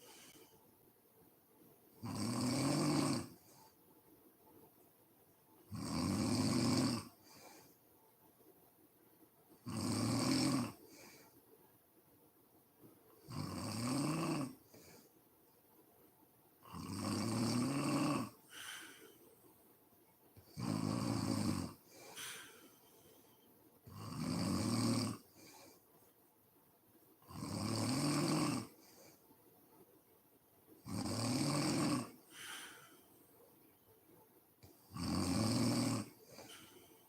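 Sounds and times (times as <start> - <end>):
quiet breathing: 0.0 - 13.6, 14.4 - 37.0
woman snoring: 2.0 - 3.7, 5.7 - 7.7, 9.6 - 11.2, 13.2 - 15.0, 16.6 - 19.1, 20.5 - 22.6, 23.9 - 25.8, 27.3 - 29.2, 30.8 - 33.0, 34.8 - 37.0.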